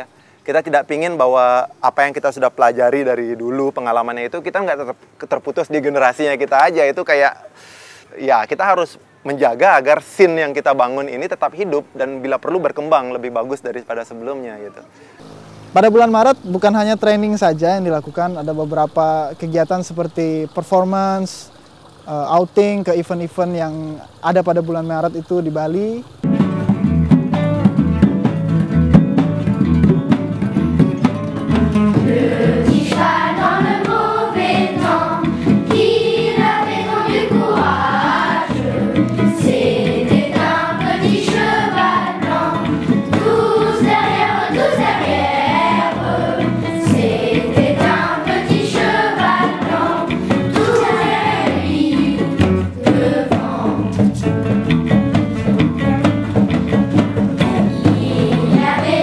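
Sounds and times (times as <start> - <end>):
instrumental music: 26.1 - 59.0
group singing in unison: 32.0 - 54.3, 57.3 - 59.0.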